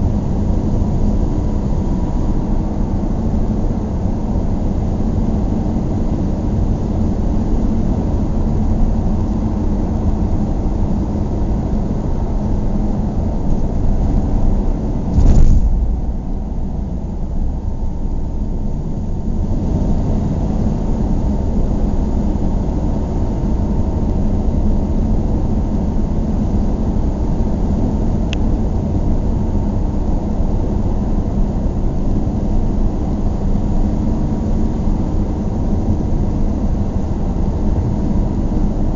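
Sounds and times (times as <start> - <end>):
car cabin road rumble: 0.0 - 31.8
loud thump: 15.1 - 17.0.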